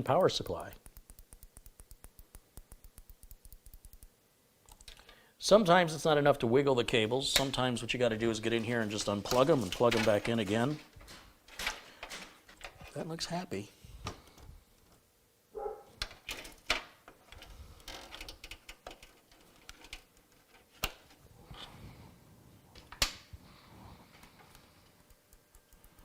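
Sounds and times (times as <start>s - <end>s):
sharp clicks of cable connectors: 0.0s - 5.2s, 24.2s - 26.0s.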